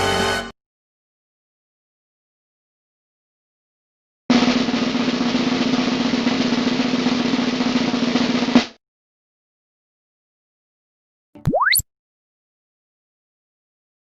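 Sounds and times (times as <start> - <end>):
snare drum roll: 4.3 - 8.8.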